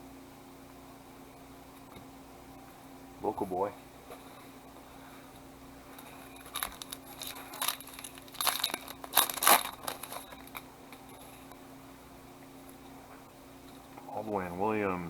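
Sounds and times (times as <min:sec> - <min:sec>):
faint steady hum: 0:00.0 - 0:15.0
wrapper crinkling and tearing: 0:06.0 - 0:10.6.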